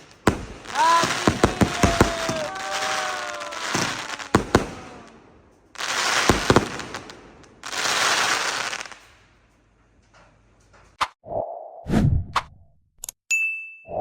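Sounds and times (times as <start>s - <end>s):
crackling firework bursts: 0.0s - 9.4s
firework bangs: 0.0s - 9.4s
firework whistle: 0.3s - 5.2s.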